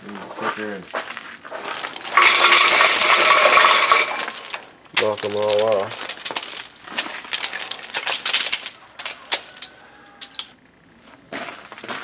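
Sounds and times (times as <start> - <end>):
ice pieces falling and clinking: 1.5 - 10.6.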